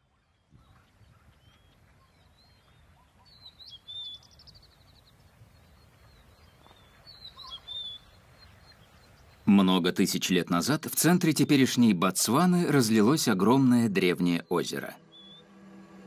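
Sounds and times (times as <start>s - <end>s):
birds chirping: 0.0s - 15.6s
bird trilling: 6.6s - 9.5s, 15.0s - 15.4s.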